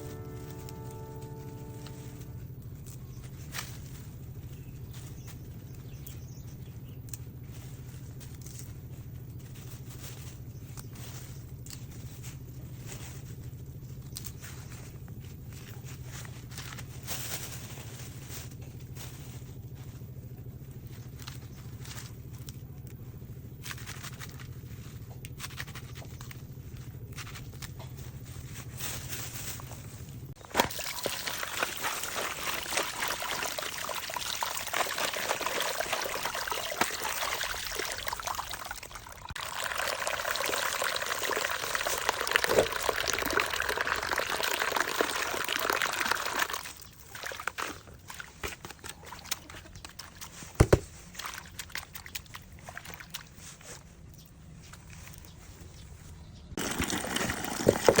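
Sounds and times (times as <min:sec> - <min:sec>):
water pouring and trickling: 0:30.4 - 0:50.4, 0:51.1 - 0:53.4, 0:56.6 - 0:58.0.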